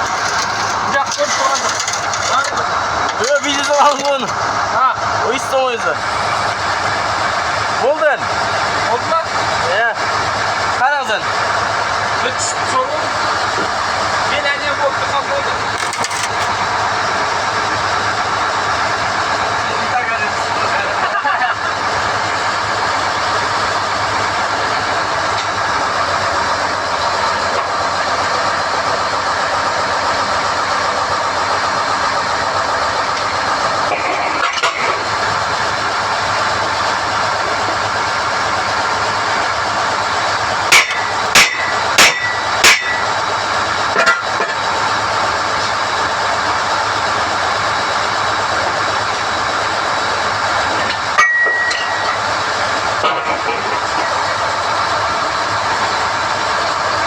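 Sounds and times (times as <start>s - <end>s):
sharp metallic clanks: 0.0s - 4.4s, 15.7s - 16.6s, 40.7s - 43.2s, 51.2s - 52.2s
drilling rig running: 0.0s - 57.0s.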